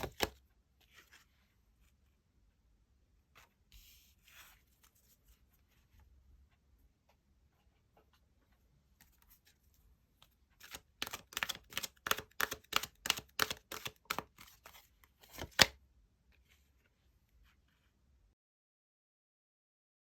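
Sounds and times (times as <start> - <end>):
cards being shuffled: 0.0 - 0.4, 10.6 - 15.8.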